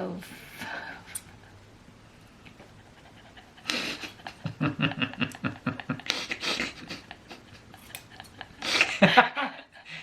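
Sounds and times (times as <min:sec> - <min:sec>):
person laughing: 0:03.1 - 0:10.0.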